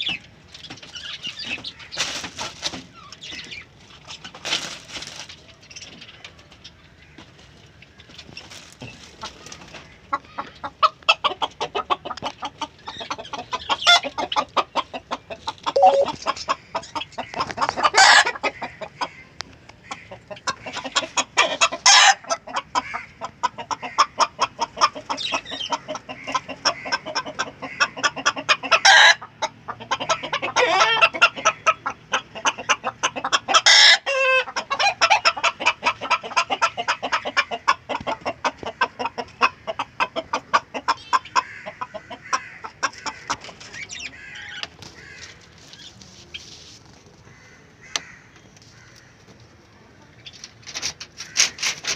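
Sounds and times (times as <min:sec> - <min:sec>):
chickens clucking: 0:00.0 - 0:51.9.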